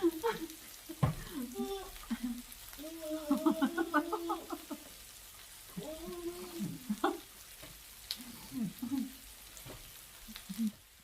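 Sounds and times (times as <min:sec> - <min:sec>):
meat sizzling on a grill: 0:00.0 - 0:11.0
low voice: 0:02.8 - 0:04.6, 0:05.8 - 0:06.8.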